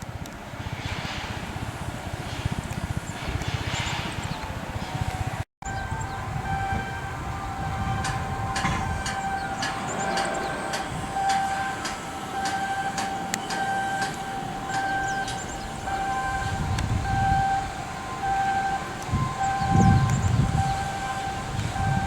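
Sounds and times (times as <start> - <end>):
electronic warning beeper: 5.6 - 22.0
metallic clanks and knocks: 8.0 - 15.6.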